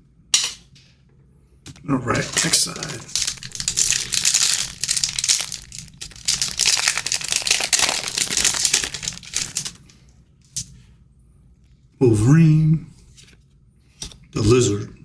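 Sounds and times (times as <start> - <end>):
plastic wrapper crinkling: 2.1 - 9.9.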